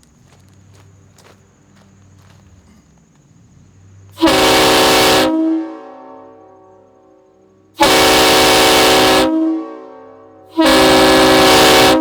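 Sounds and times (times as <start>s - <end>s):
train horn chord blasts: 4.2s - 12.0s.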